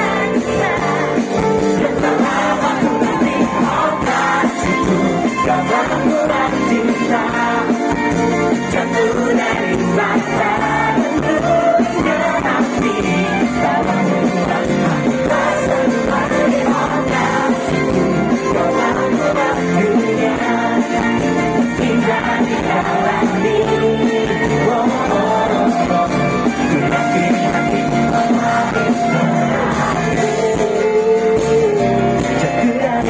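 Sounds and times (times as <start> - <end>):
live pop band playing: 0.0 - 33.0
person singing: 8.5 - 33.0.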